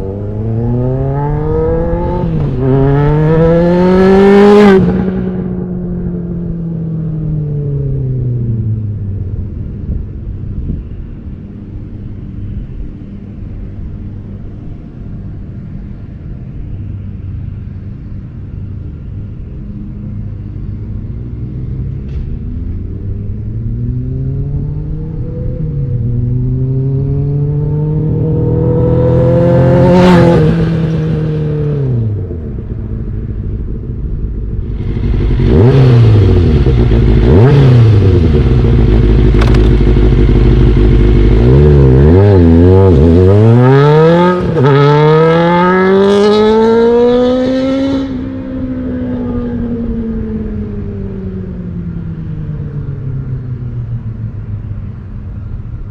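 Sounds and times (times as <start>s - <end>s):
motorcycle engine revving: 0.0s - 7.1s, 21.3s - 51.5s.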